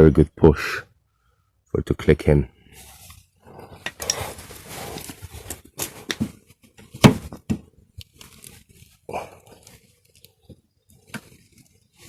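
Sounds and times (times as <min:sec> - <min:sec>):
plastic rustling and scraping: 0:03.9 - 0:12.0.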